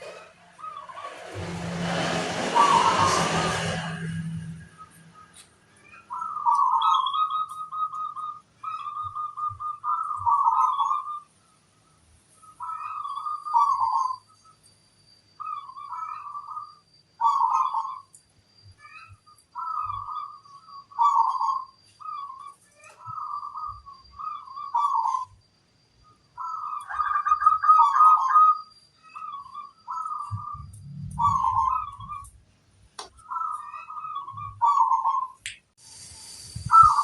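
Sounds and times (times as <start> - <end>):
dove cooing: 6.1 - 11.2, 29.9 - 32.2, 33.3 - 35.4.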